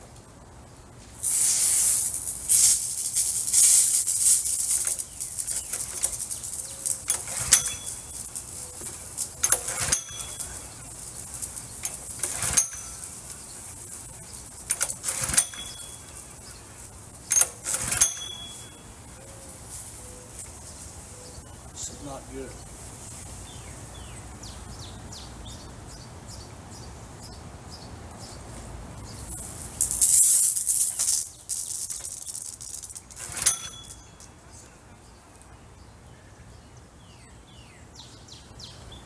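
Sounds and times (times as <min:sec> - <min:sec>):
pressure washer spraying water: 0:01.2 - 0:21.1.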